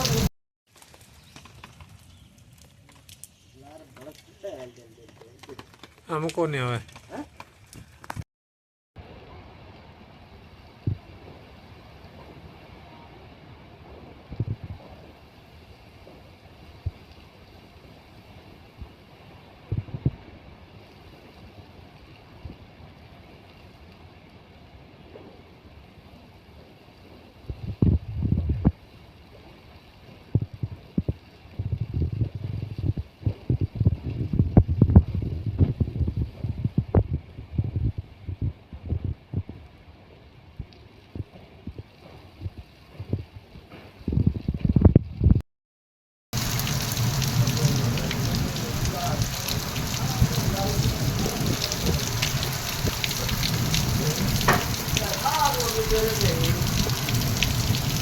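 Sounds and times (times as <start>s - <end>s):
steady rain falling: 0.0s - 7.6s, 9.0s - 28.0s, 28.6s - 36.5s, 46.4s - 58.0s
wind buffeting microphone: 13.8s - 15.1s, 19.6s - 20.4s, 27.5s - 28.8s, 30.2s - 39.7s, 46.6s - 58.0s
raindrops ticking: 46.4s - 58.0s.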